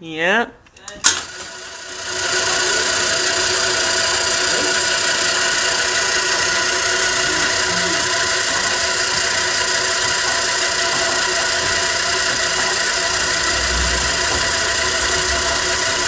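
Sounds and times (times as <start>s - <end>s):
garage door opener whining: 0.9s - 16.0s
low rumble: 12.8s - 16.0s.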